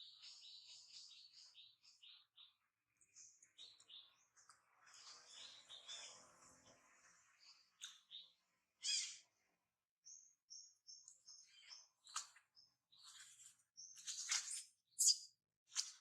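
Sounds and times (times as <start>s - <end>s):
animal chirps: 8.8s - 9.2s.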